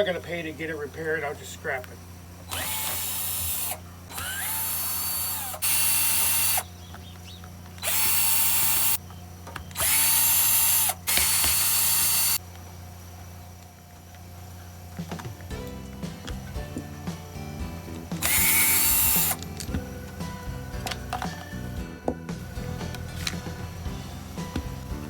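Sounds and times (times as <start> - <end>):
power drill motor whine: 2.4 - 12.4, 18.2 - 20.1.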